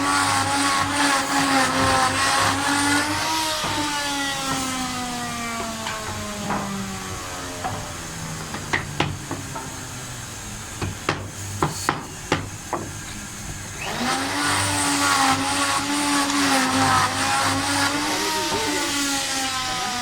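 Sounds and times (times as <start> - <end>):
machine humming and hissing: 0.0 - 20.0
sharp knocks like hammering: 1.4 - 7.0, 7.6 - 9.9, 10.8 - 13.0.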